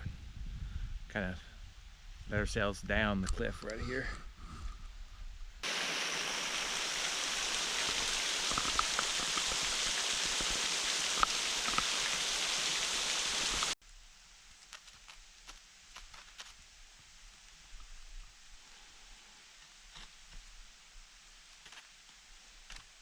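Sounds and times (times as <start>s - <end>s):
rush of falling water: 5.6s - 13.8s.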